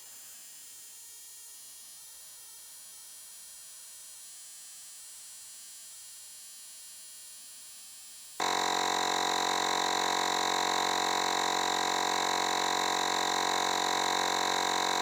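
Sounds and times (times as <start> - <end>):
air compressor electric whine: 8.4 - 15.0.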